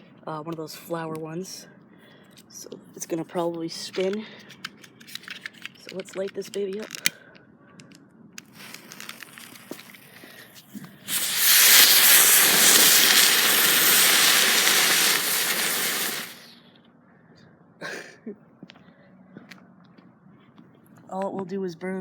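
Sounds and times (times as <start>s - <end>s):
firework hissing sparks: 8.4s - 16.6s.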